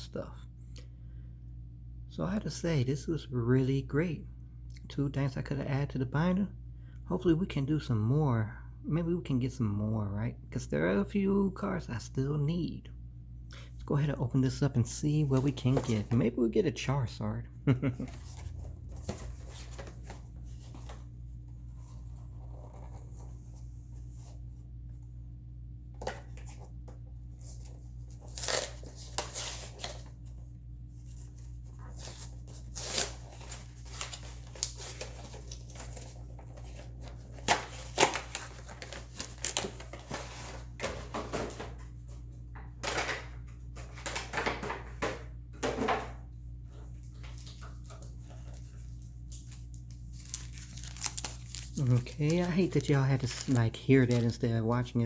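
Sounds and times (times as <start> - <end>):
steady low hum: 0.0 - 55.0
packaging tearing and crinkling: 28.1 - 30.1, 31.9 - 40.5, 49.3 - 54.4.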